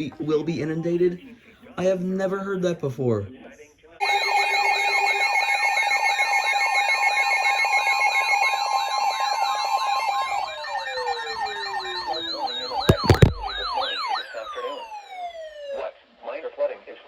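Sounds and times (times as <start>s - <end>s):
electronic alarm sirens warbling: 4.0s - 15.9s
loud knocks: 12.9s - 13.7s.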